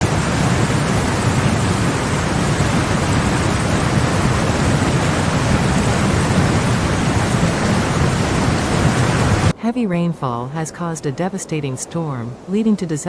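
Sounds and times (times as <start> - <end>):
deep rumble: 0.0 - 9.6
heavy rain pouring: 0.0 - 9.6.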